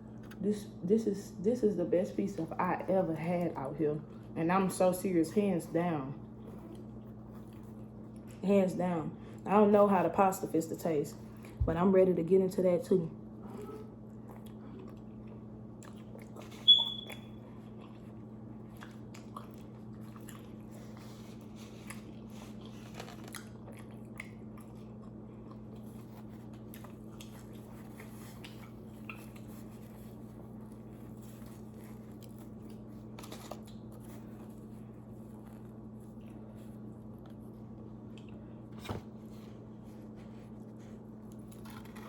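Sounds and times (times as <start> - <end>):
chewing and biting food: 6.2 - 8.4, 13.5 - 42.0.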